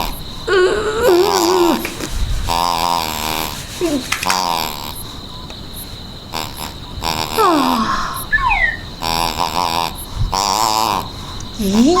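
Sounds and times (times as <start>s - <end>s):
croaky cartoon voice noises: 0.5s - 2.0s, 7.1s - 11.0s, 11.6s - 12.0s
falling squeals: 7.4s - 9.3s.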